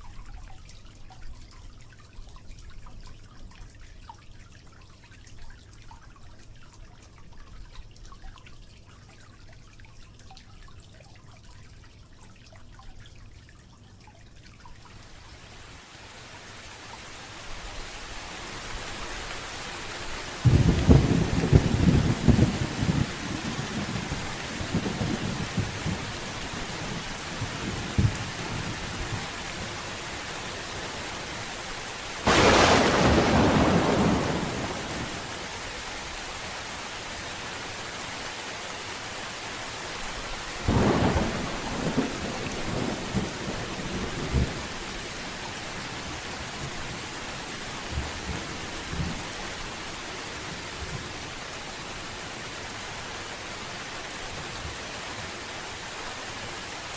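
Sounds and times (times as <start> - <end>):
steady rain: 14.7 - 56.9
loud thunderclap: 20.4 - 26.2, 32.2 - 35.5, 40.7 - 44.6
thunder rumbling: 20.4 - 30.3, 32.3 - 35.6, 40.7 - 44.6.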